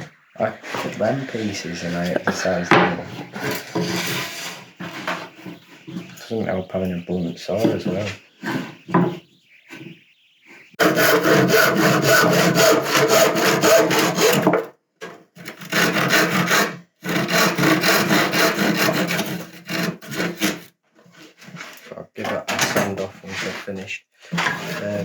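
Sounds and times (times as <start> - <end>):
handsaw cutting wood: 1.6 - 5.6, 10.8 - 14.7, 15.4 - 20.7.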